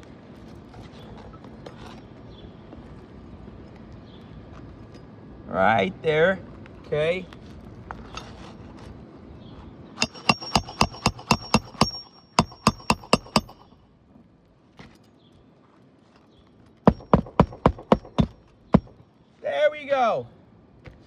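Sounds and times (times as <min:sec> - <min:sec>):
hammer driving nails: 0:10.0 - 0:13.7, 0:16.9 - 0:19.0.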